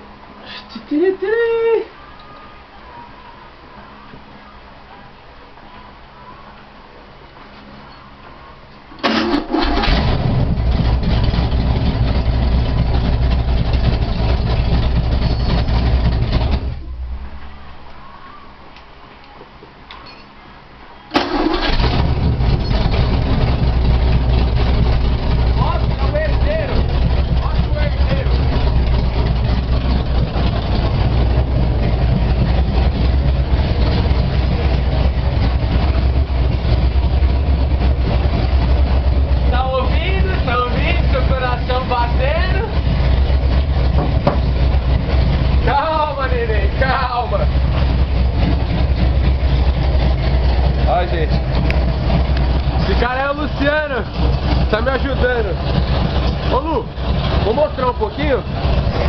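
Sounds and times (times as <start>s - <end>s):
petrol engine running: 9.0s - 17.9s, 21.1s - 59.0s.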